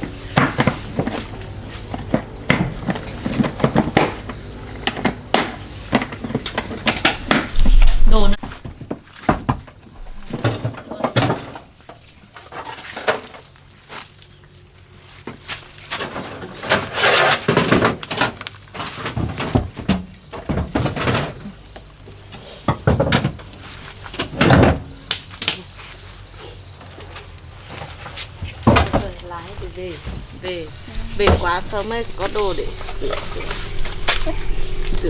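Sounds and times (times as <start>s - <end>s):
rustling and scraping: 0.0s - 35.0s
knocks and thuds: 27.8s - 35.0s.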